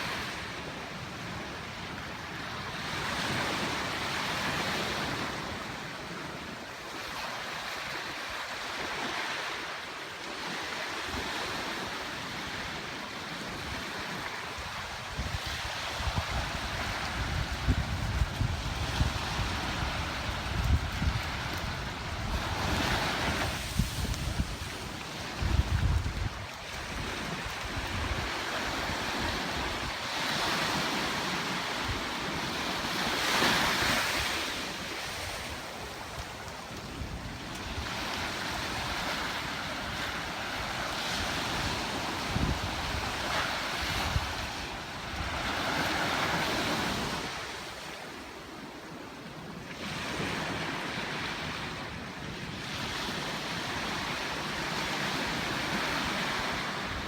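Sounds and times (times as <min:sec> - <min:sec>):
waves breaking on beach: 0:00.0 - 0:57.0
wind buffeting microphone: 0:13.6 - 0:47.9.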